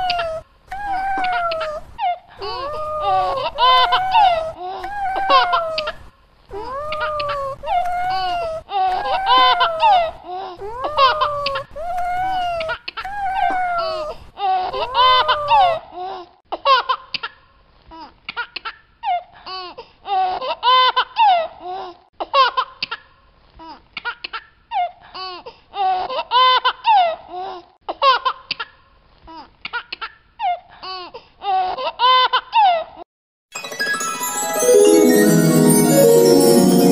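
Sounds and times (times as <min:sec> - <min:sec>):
high-pitched laughter: 0:02.4 - 0:06.0, 0:09.0 - 0:10.0.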